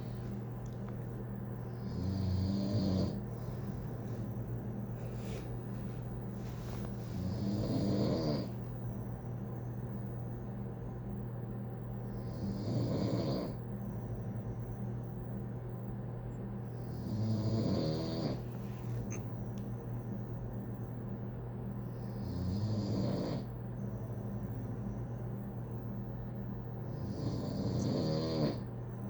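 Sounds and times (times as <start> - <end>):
person snoring: 1.8 - 3.2, 7.2 - 8.6, 27.0 - 28.6.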